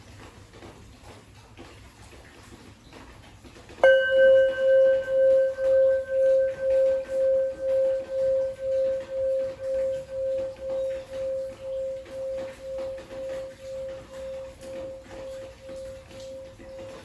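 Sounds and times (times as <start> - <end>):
bowl bell ringing: 3.8 - 17.0.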